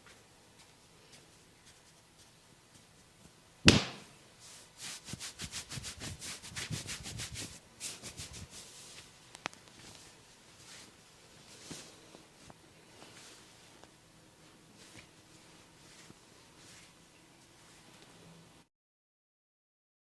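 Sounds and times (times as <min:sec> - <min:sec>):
loud sharp crack: 0:03.7 - 0:04.1
scratching strokes on scalp: 0:04.4 - 0:13.8, 0:14.4 - 0:18.0.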